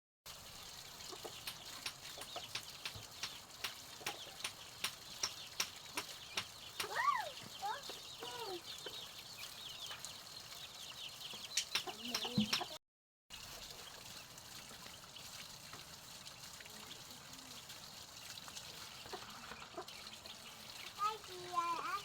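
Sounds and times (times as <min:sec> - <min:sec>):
chickens clucking: 0:01.1 - 0:12.8, 0:18.7 - 0:22.0.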